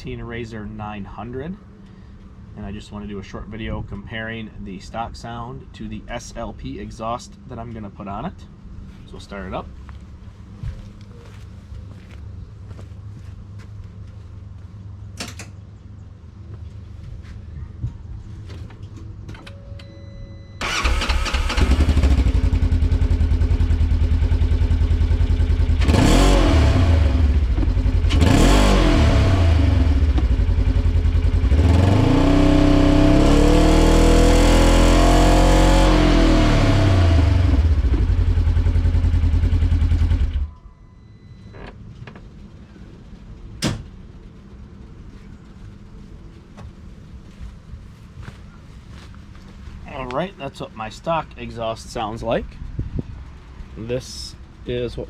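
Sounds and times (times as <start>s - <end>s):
off-road vehicle engine revving: 20.6s - 40.5s.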